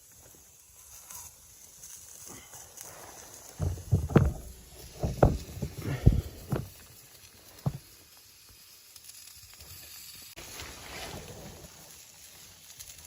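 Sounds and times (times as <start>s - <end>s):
dull thuds and knocks: 3.6s - 6.8s, 7.6s - 7.9s.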